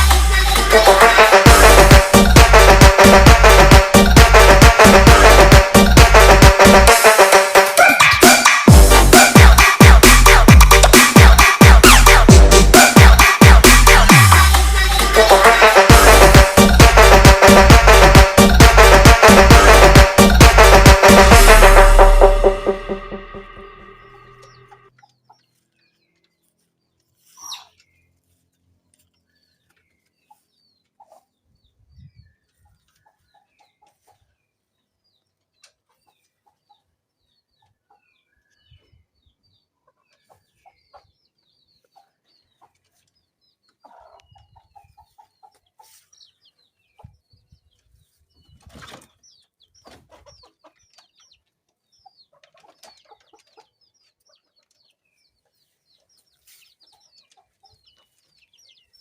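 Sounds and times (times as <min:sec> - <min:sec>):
chickens clucking: 0:00.0 - 0:14.2, 0:22.0 - 0:59.0
high peeping calls: 0:23.2 - 0:26.3, 0:27.2 - 0:28.2.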